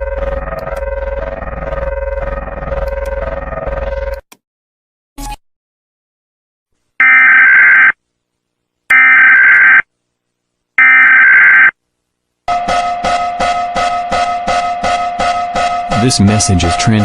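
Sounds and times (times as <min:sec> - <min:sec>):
screechy digital data tones: 0:12.5 - 0:17.0.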